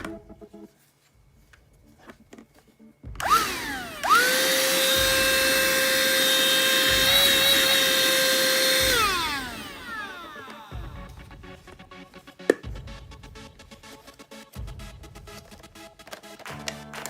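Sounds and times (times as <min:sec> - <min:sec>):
vacuum cleaner motor whine: 0:03.1 - 0:11.4.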